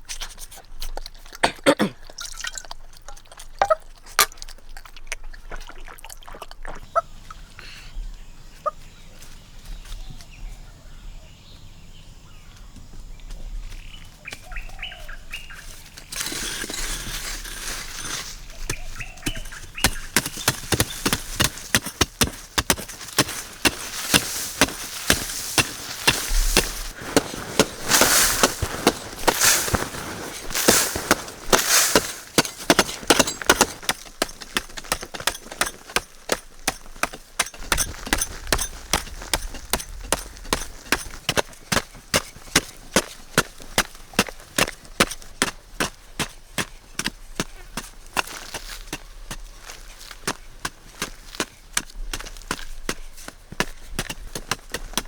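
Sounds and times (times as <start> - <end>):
faint bird chirps: 6.9 - 15.8.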